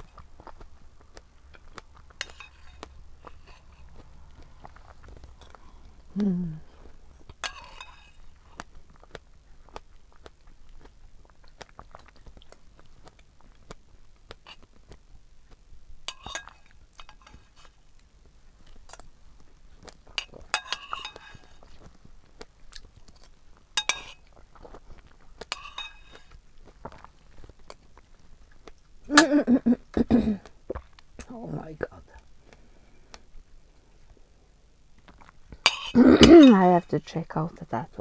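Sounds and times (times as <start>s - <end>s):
wet chewing: 0.0s - 14.4s.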